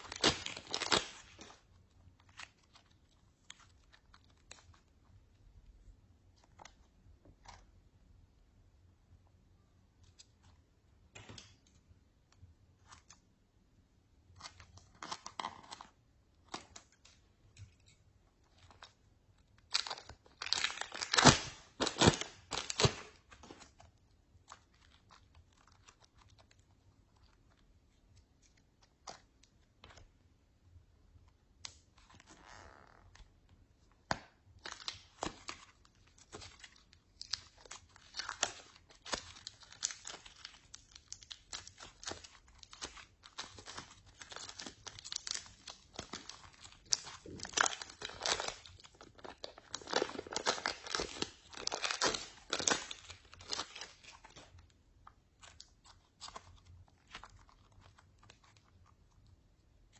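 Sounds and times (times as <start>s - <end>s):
slime crackling and popping: 0.0s - 5.1s, 18.0s - 30.0s, 34.0s - 59.4s.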